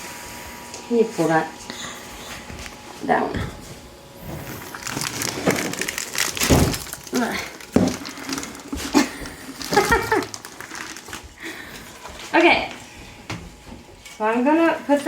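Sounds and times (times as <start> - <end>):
plastic wrap crinkling: 4.2 - 12.3.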